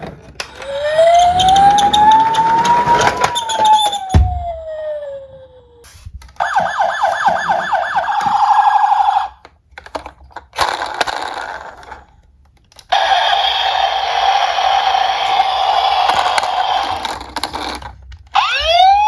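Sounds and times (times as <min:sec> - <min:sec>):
warbling siren yelp: 0:00.6 - 0:09.4, 0:18.4 - 0:19.0
buzzy siren tone: 0:00.8 - 0:05.8.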